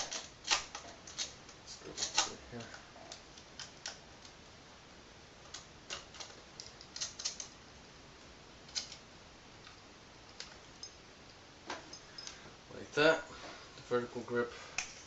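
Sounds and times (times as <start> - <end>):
small parts clicking and tapping: 5.4 - 7.6, 8.7 - 9.0.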